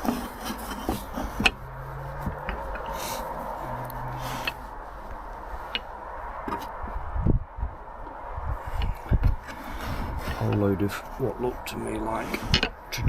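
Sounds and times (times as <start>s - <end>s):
hand tools clicking and knocking: 0.0s - 4.6s, 12.2s - 13.0s.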